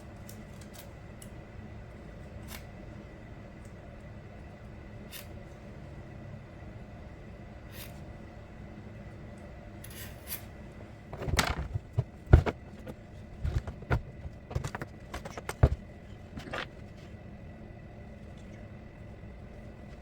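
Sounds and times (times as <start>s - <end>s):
quiet steady background noise: 0.0s - 20.0s
irregular knocks and clatters: 11.1s - 17.0s.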